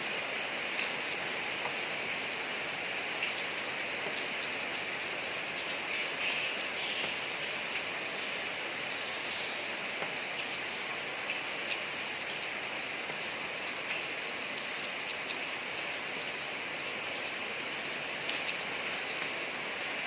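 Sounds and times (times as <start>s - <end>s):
rain falling on street: 0.0s - 20.0s.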